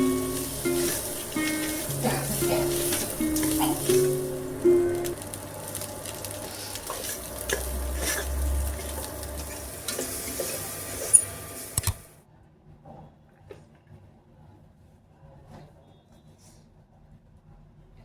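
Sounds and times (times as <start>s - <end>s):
food sizzling in a pan: 0.0s - 12.2s.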